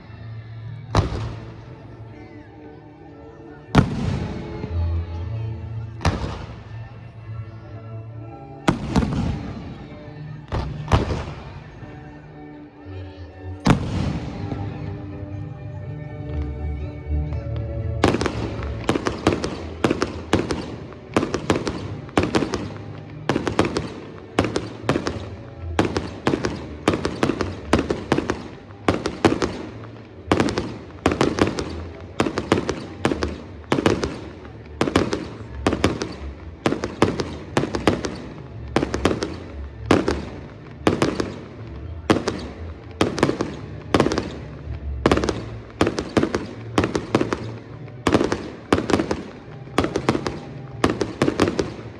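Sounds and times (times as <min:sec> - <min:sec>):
fireworks bangs: 0:03.7 - 0:04.8, 0:08.7 - 0:11.7, 0:13.7 - 0:14.9, 0:18.0 - 0:51.9.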